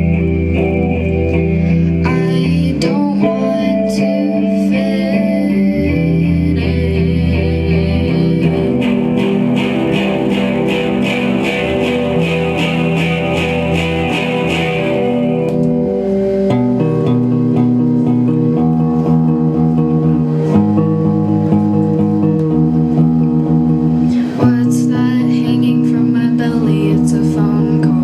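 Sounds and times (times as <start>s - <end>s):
layered guitar notes: 0.0s - 28.0s
regular ticking beat: 8.1s - 24.5s.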